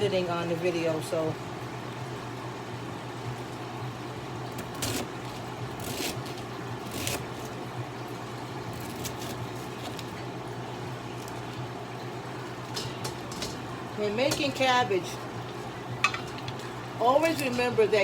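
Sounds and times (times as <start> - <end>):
range hood fan humming: 0.0 - 18.0.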